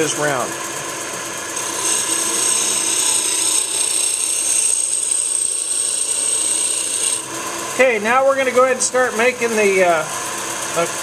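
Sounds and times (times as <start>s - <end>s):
wood lathe whining: 0.0s - 11.0s
gouge cutting spinning wood: 1.1s - 11.0s.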